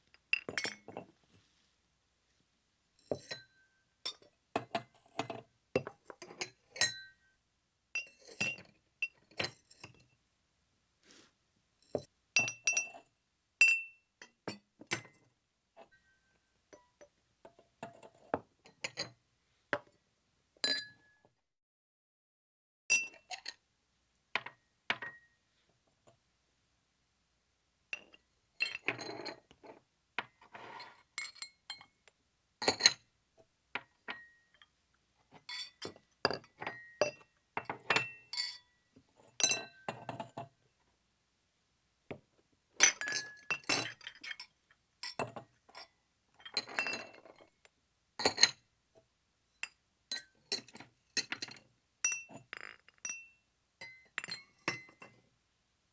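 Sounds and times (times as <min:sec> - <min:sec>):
glass clinking: 0:00.4 - 0:01.0, 0:37.9 - 0:38.6, 0:52.0 - 0:55.1.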